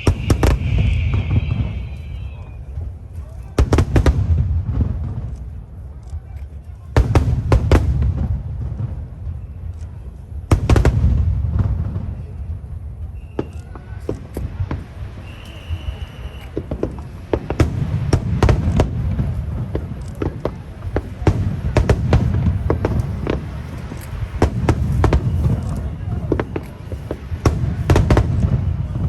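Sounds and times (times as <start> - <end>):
low rumble of booms: 0.0 - 6.3, 7.0 - 15.2
fireworks bangs and cracks: 0.0 - 29.0.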